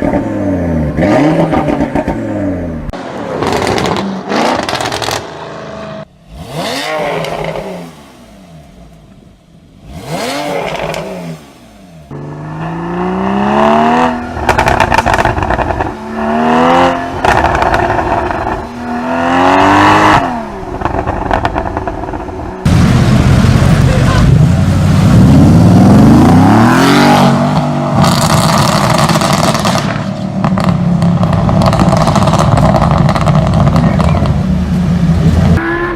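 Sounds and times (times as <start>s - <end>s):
exhaust crackles and pops: 3.4s - 5.4s, 14.4s - 16.0s, 17.2s - 18.7s, 20.6s - 26.3s, 27.5s - 34.5s
sports car engine revving and accelerating: 3.4s - 8.6s, 9.8s - 22.4s, 24.7s - 35.9s.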